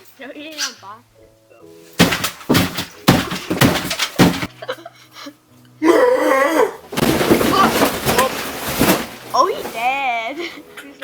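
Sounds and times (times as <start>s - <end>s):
clattering noise: 2.0s - 4.5s, 6.9s - 10.0s
loud bangs and crashes: 2.0s - 4.5s, 6.9s - 9.6s.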